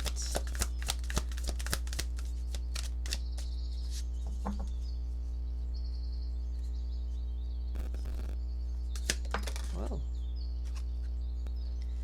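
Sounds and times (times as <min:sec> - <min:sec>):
cards shuffled and snapped: 0:00.0 - 0:03.5, 0:09.0 - 0:09.8
steady low hum: 0:00.0 - 0:12.0
faint bird chirps: 0:02.6 - 0:09.1, 0:09.7 - 0:12.0.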